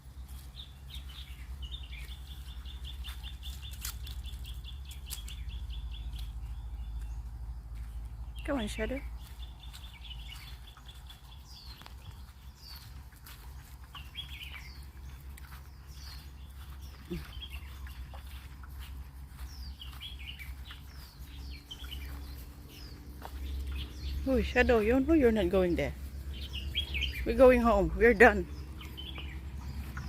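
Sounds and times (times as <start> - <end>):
birds chirping: 0.0 - 30.0
birds twittering: 0.0 - 30.0
steady low rumble: 0.0 - 30.0.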